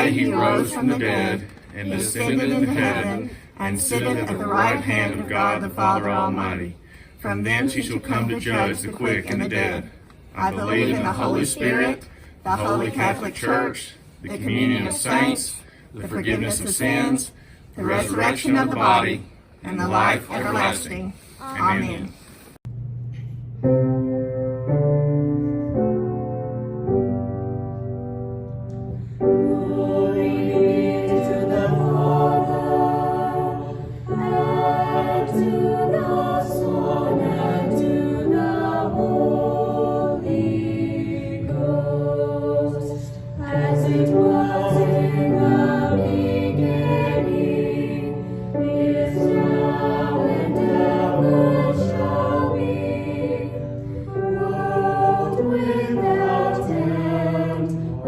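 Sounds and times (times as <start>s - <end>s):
choir singing a hymn: 0.0s - 22.1s, 28.8s - 58.0s
piano accompaniment: 22.7s - 58.0s.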